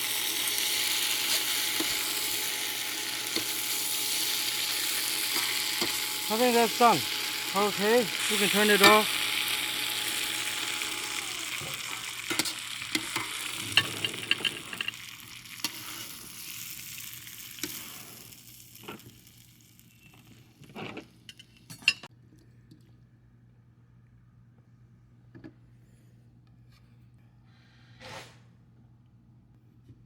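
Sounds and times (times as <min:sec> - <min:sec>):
food sizzling in a pan: 0:00.0 - 0:20.2.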